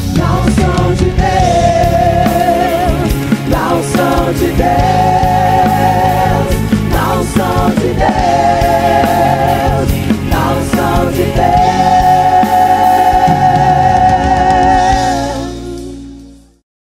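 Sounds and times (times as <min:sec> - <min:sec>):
gospel song with band: 0:00.0 - 0:16.6.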